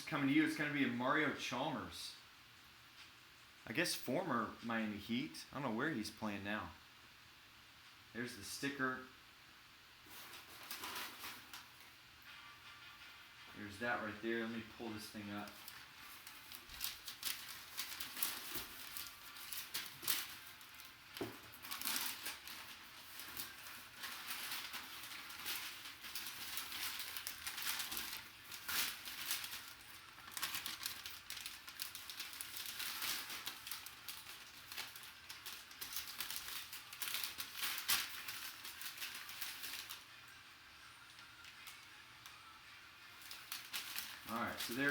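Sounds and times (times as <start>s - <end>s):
packaging crinkling: 10.0s - 44.9s.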